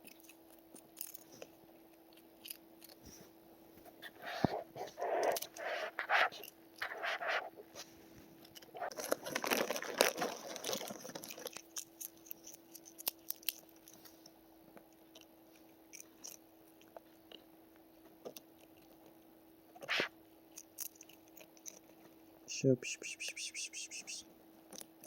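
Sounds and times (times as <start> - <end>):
faint steady hum: 0.0 - 25.0
potato chips crunching: 8.4 - 14.0.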